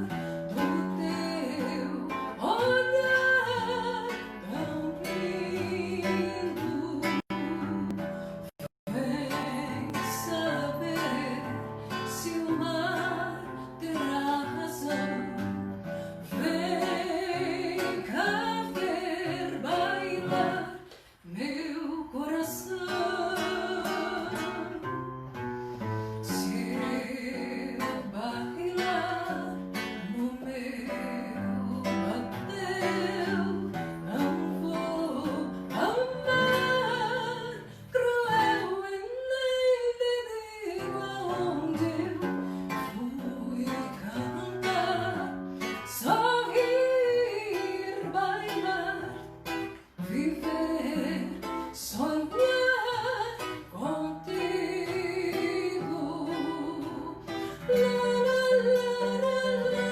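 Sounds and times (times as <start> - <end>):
person singing: 0.0 - 25.2, 25.8 - 59.9
acoustic guitar: 0.0 - 59.9.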